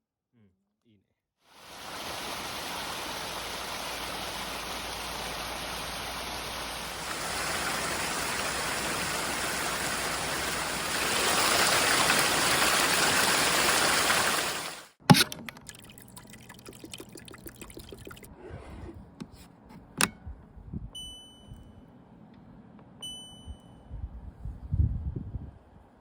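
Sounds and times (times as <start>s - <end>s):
running water rushing: 1.6s - 18.3s.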